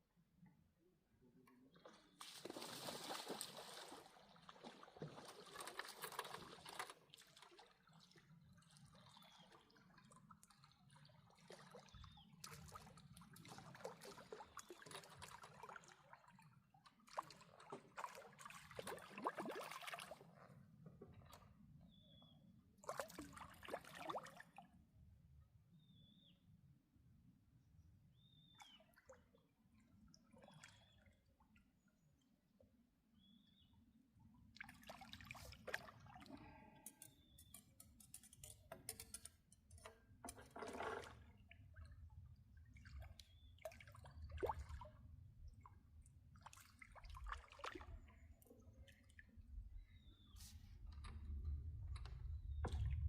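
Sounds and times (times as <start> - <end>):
water splashing and sloshing: 1.7 - 24.8, 28.6 - 32.2, 34.5 - 53.0.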